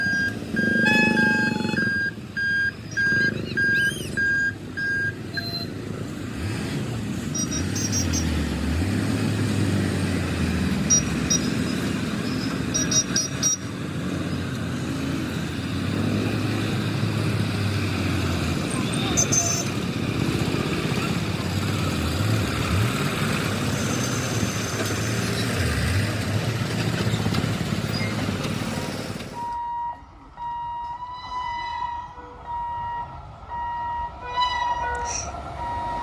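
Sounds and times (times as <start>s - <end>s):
short electronic beeps: 0.0s - 5.8s, 7.4s - 8.4s, 10.9s - 13.7s, 18.7s - 19.8s, 34.9s - 36.0s
vehicle engines running: 0.0s - 31.0s, 31.9s - 36.0s.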